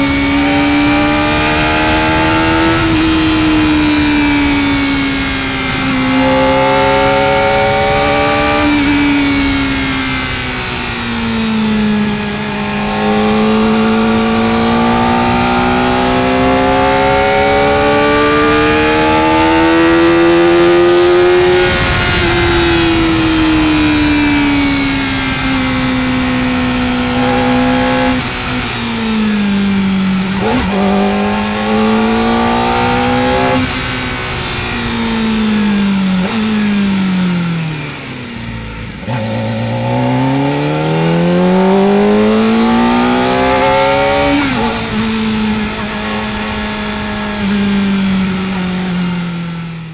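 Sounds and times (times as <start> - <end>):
wind rushing over microphone: 0.0 - 36.8
motorcycle engine revving: 0.0 - 49.9.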